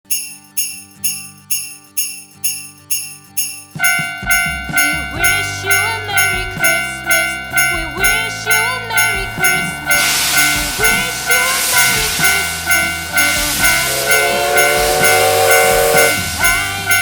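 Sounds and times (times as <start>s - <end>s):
level crossing warning bell: 0.1s - 17.0s
low sound with gliding tones: 8.8s - 16.7s.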